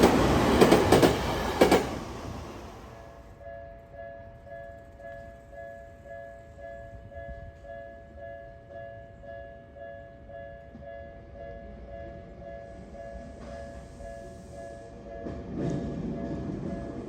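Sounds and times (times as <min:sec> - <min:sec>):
train rumble: 0:00.0 - 0:03.8, 0:10.7 - 0:17.0
level-crossing warning bell: 0:03.0 - 0:17.0.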